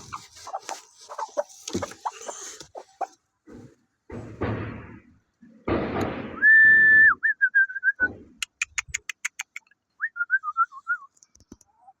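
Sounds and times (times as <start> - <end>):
sharp clicks: 8.4 - 9.7.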